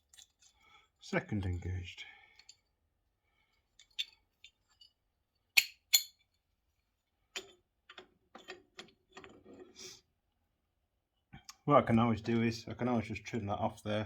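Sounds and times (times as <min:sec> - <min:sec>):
metal parts clinking: 0:03.8 - 0:05.0, 0:05.6 - 0:06.2.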